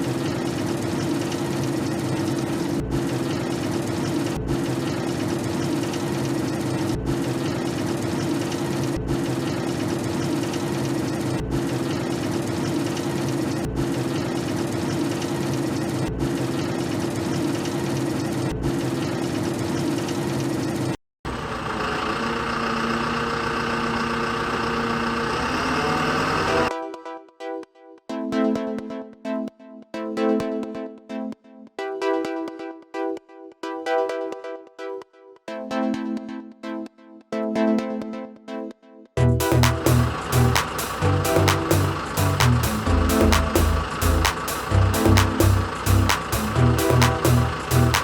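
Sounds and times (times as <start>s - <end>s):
steady tones: 39.2s - 48.0s.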